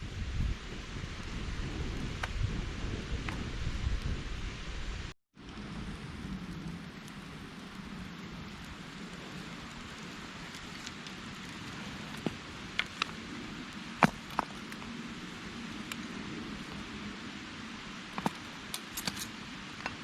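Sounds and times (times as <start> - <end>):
mountain stream rushing: 5.4 - 20.0.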